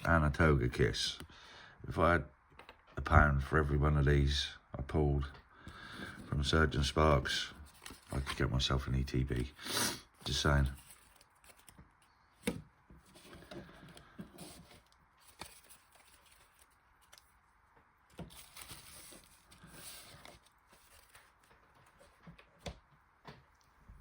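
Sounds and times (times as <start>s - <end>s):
cards and packaging rustling: 7.3s - 22.9s.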